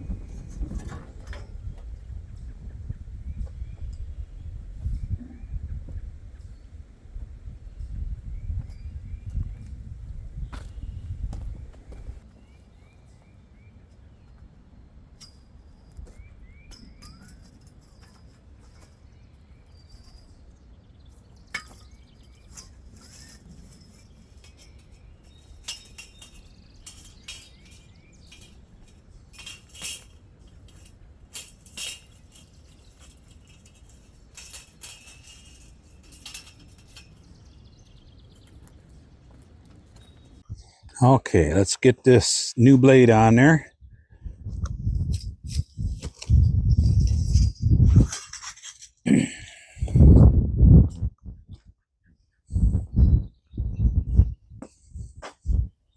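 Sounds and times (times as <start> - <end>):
metallic clinks of tools: 15.2 - 20.4, 21.3 - 38.5.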